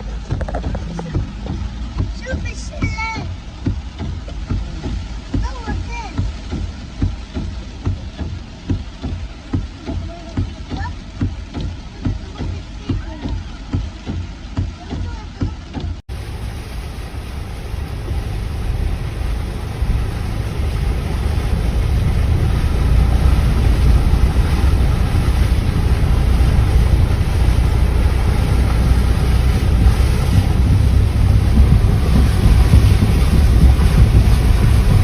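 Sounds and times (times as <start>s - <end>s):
flood water rushing: 0.0s - 35.0s
wind buffeting microphone: 16.1s - 35.0s.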